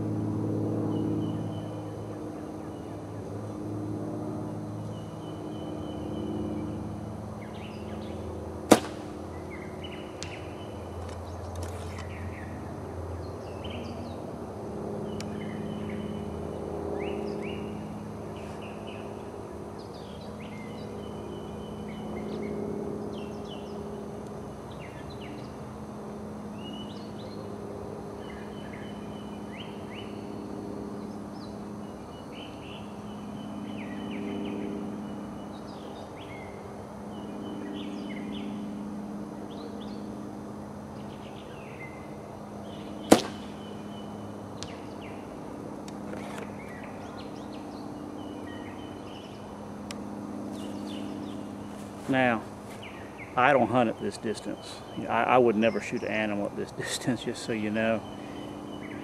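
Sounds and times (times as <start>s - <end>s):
low steady hum: 0.0s - 59.0s
small birds chirping: 4.4s - 14.2s, 15.0s - 25.7s, 26.5s - 38.8s, 39.4s - 40.2s, 40.8s - 59.0s
bow string snap: 8.7s - 9.1s, 43.1s - 43.5s.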